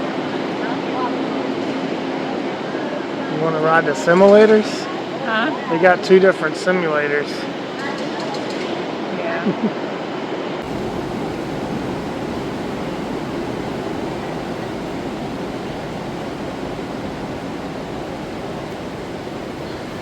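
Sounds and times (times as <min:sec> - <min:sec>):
steady rushing noise: 0:10.6 - 0:20.0.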